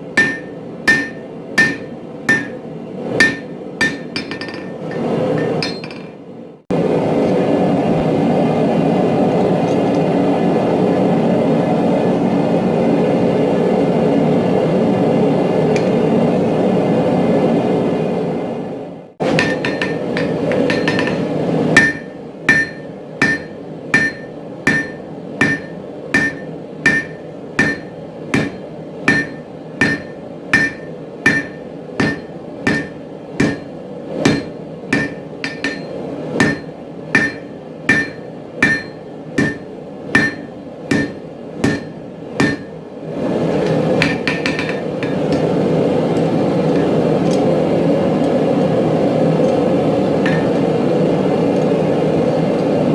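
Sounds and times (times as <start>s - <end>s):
hammer on steel at anvil: 0.2s - 2.6s, 3.2s - 4.8s, 19.3s - 42.8s, 50.3s - 50.6s.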